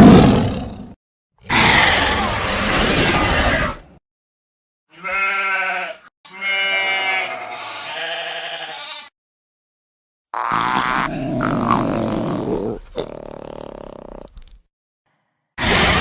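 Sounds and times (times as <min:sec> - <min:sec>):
creature calls: 0:01.5 - 0:03.8.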